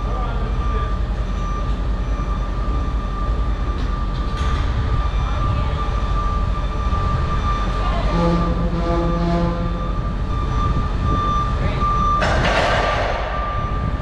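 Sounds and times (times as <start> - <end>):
mechanical rumble: 0.0 - 14.0
high whine: 1.5 - 14.0.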